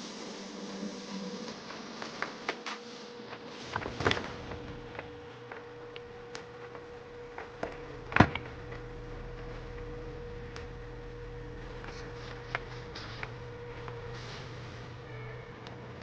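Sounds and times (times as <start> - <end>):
electrical hum: 3.2 - 16.0.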